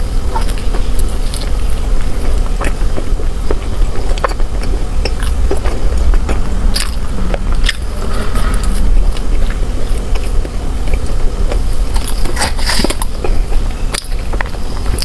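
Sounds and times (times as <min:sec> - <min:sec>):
person chewing soft food: 0:00.0 - 0:15.0
steady low rumble: 0:00.0 - 0:15.0
wet mouth clicks: 0:02.6 - 0:09.6.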